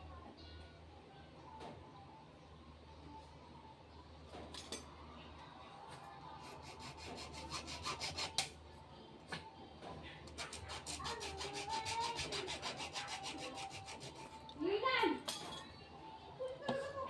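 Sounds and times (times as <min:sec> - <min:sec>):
rubbing strokes on plastic pipe: 0:10.3 - 0:14.5.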